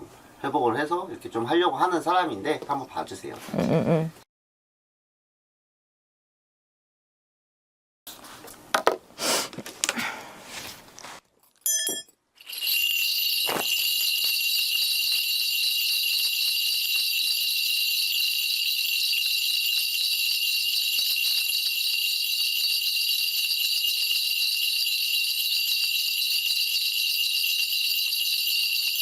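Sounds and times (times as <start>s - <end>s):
short ringing tone: 11.7s - 18.6s
bell rattle jingling: 11.7s - 29.0s.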